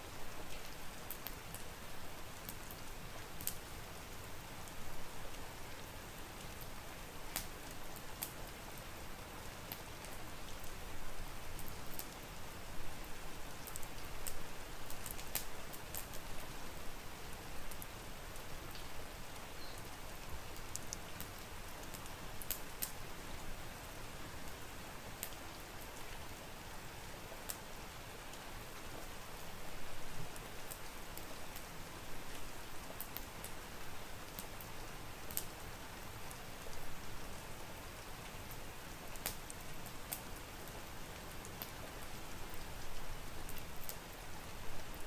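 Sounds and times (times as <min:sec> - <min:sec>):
wood fire popping and crackling: 0:00.4 - 0:01.8, 0:02.4 - 0:03.7, 0:07.3 - 0:08.4, 0:11.5 - 0:12.2, 0:13.1 - 0:16.5, 0:20.6 - 0:23.0, 0:25.2 - 0:25.4, 0:30.3 - 0:35.6, 0:38.5 - 0:44.1.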